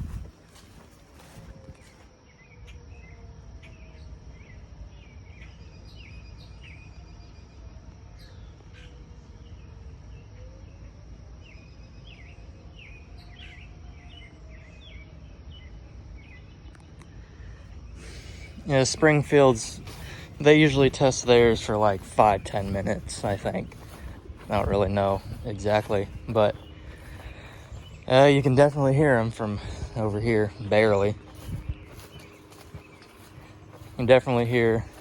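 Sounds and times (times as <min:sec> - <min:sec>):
low steady rumble: 0:00.0 - 0:01.8, 0:14.5 - 0:35.0
distant warning sirens: 0:00.0 - 0:35.0
high insect drone: 0:00.0 - 0:35.0
birds chirping: 0:11.4 - 0:35.0.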